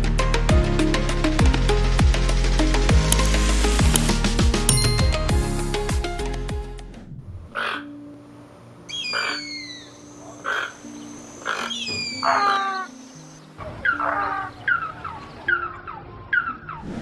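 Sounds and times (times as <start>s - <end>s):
soft sustained music: 8.0s - 15.8s.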